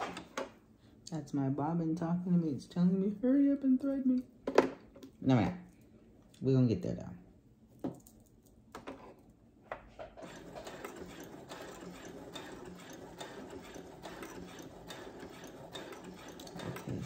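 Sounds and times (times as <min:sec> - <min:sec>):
sewing machine clicks: 0:10.2 - 0:17.0
sewing machine stitching: 0:10.2 - 0:17.0.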